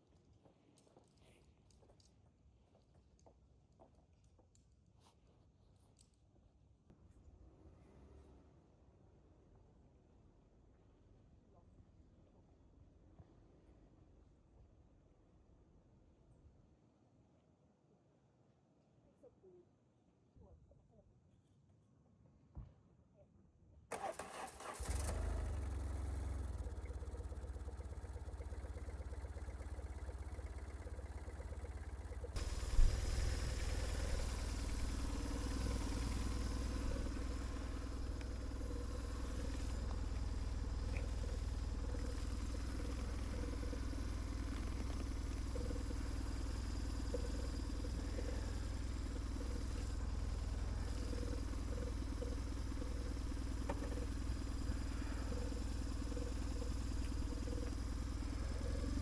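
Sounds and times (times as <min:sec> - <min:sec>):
motorcycle engine idling: 0:23.9 - 0:59.0.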